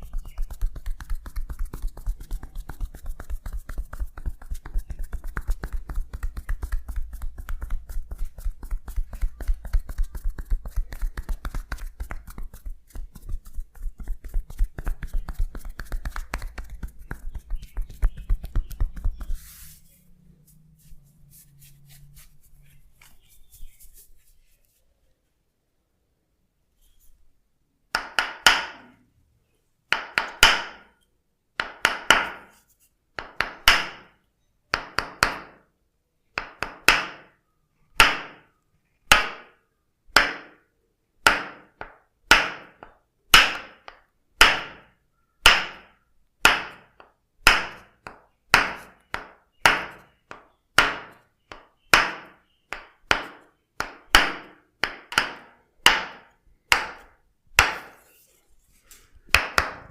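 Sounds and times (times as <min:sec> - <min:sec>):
wooden mallet knocking wood: 0:41.2 - 0:58.0.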